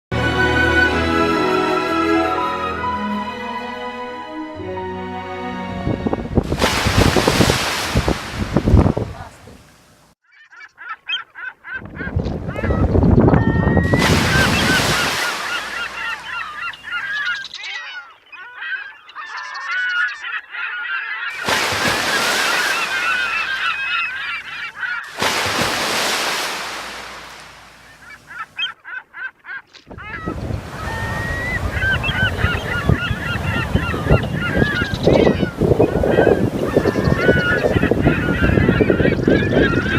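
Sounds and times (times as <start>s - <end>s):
geese honking: 0.1s - 5.7s, 13.4s - 39.9s
rushing washing noise: 6.4s - 9.3s, 13.9s - 16.6s, 21.3s - 24.4s, 25.1s - 27.9s.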